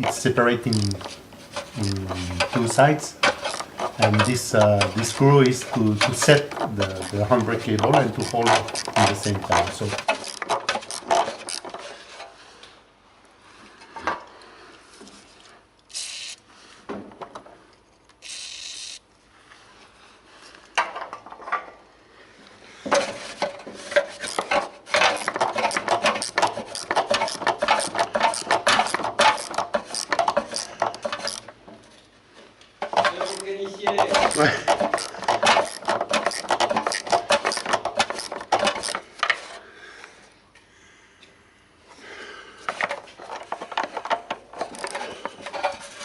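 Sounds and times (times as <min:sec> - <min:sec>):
ratchet clicking and scraping: 0:00.0 - 0:12.2, 0:15.9 - 0:16.4, 0:18.1 - 0:19.0, 0:23.0 - 0:31.6, 0:32.8 - 0:39.6, 0:42.7 - 0:46.0.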